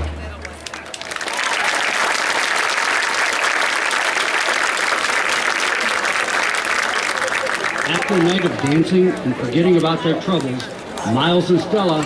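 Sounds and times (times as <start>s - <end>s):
audience applauding: 0.0s - 8.8s.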